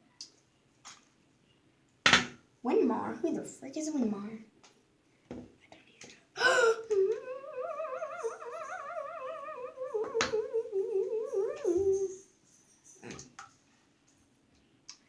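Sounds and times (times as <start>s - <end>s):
high voice humming warbling note: 6.4s - 12.2s.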